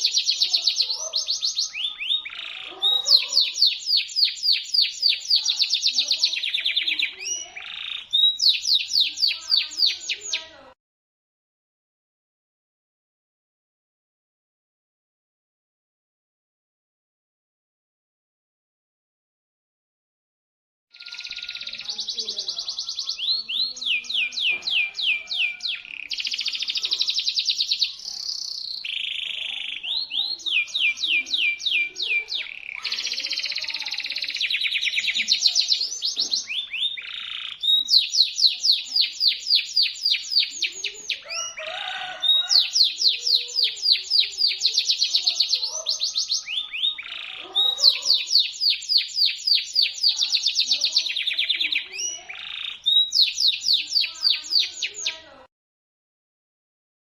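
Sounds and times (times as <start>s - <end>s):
canary singing trills: 0.0s - 10.8s, 20.9s - 55.4s.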